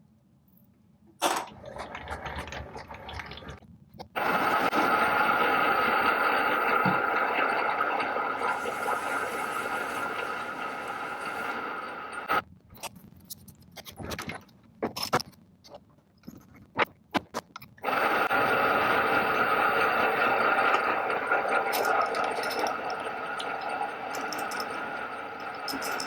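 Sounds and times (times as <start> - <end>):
metalworking machine whirring: 4.2 - 12.4, 17.8 - 26.0
metal parts clicking and knocking: 24.1 - 24.7, 25.7 - 26.0.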